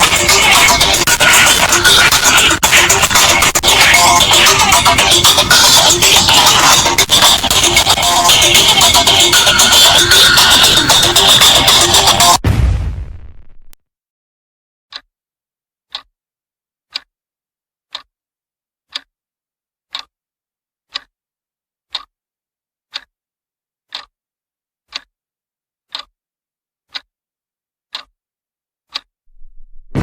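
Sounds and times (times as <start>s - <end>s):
clock ticking: 0.0s - 12.4s.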